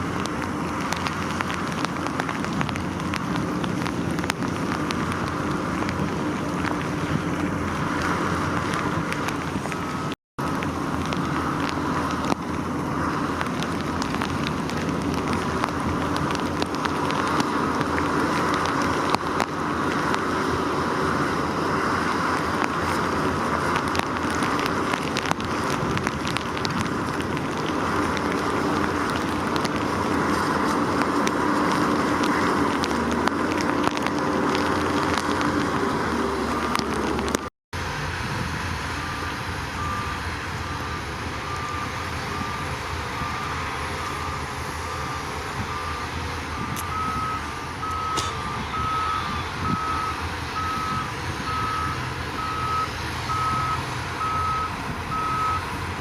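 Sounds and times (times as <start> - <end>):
diesel engine running: 0.0 - 56.0
reversing alarm beeping: 39.8 - 55.6.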